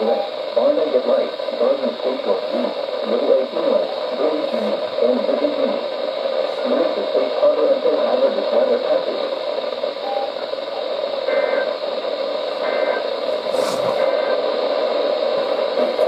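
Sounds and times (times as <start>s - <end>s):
radio static hiss: 0.0s - 16.0s
faint high beeps: 10.0s - 10.4s.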